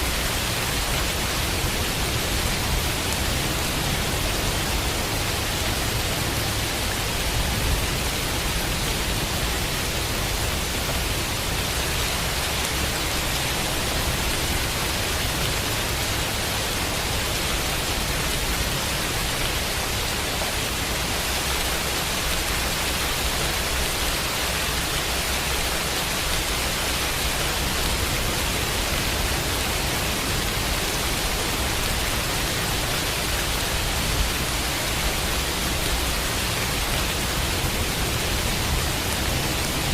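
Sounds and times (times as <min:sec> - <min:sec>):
rain hiss: 0:00.0 - 0:39.9.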